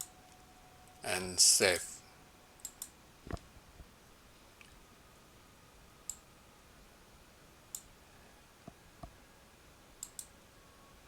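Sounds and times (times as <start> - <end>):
computer mouse clicks: 2.6 - 3.4, 10.0 - 10.3.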